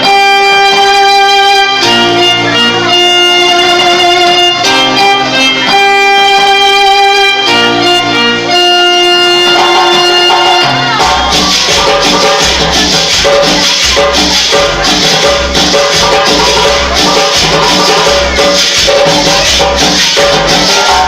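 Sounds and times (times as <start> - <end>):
cumbia music over sound system: 0.0 - 21.0.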